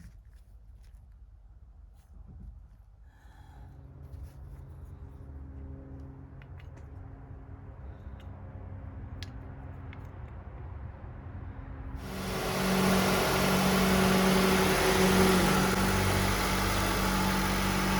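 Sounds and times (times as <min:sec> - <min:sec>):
car engine idling: 0:12.0 - 0:17.9
car engine starting: 0:12.0 - 0:17.9.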